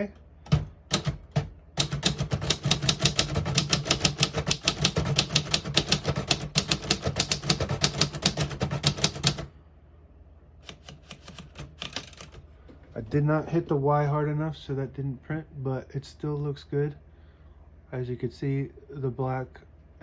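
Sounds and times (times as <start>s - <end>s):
typewriter keys clacking: 0.5s - 9.5s, 10.7s - 12.4s.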